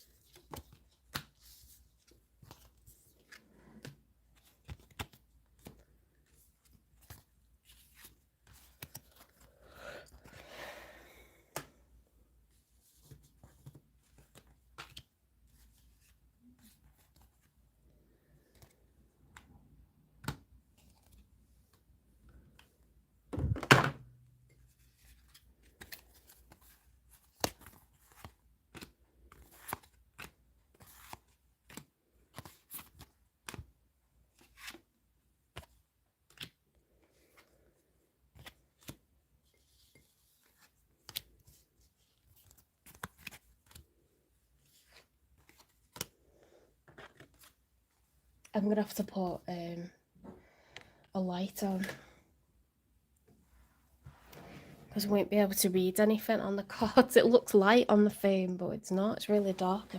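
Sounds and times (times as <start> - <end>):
cards handled on a table: 0.0 - 9.5, 12.7 - 17.6, 24.6 - 34.9, 35.5 - 37.6, 38.3 - 47.6.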